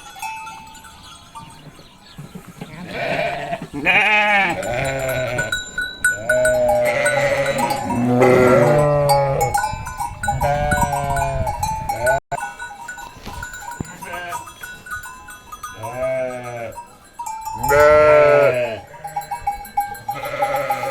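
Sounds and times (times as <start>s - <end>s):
livestock bells clinking: 0.0s - 20.9s
sheep bleating: 2.8s - 5.6s, 6.2s - 9.5s, 14.0s - 14.5s, 15.8s - 16.8s, 17.6s - 19.2s, 20.1s - 20.9s.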